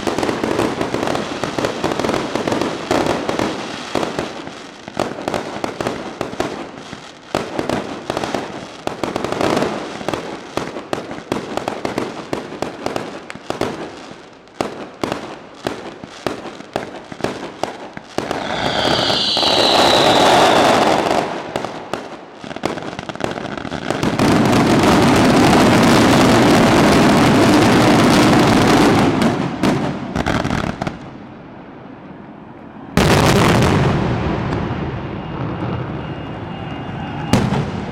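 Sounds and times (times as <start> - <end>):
fireworks bangs and crackles: 0.0 - 37.9
firework hissing whistle: 18.1 - 21.9, 34.7 - 37.9
barrage of explosions: 18.1 - 31.0, 33.0 - 37.9.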